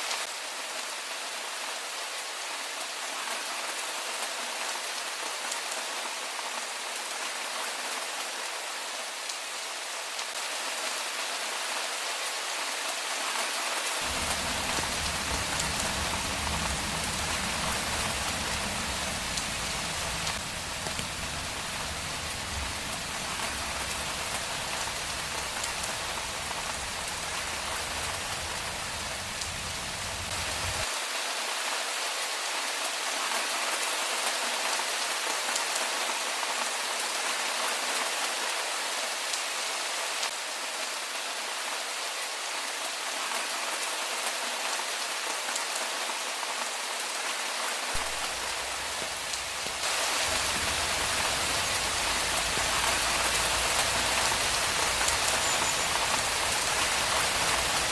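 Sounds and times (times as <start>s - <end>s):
rain pattering: 10.1s - 31.0s, 47.5s - 57.9s
low rumble: 14.1s - 30.8s.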